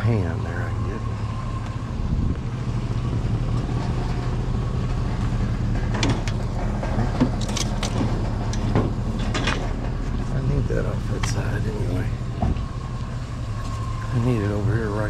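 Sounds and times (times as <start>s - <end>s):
vehicle engine humming: 0.0s - 15.0s
short clicks and clanks: 5.8s - 10.0s.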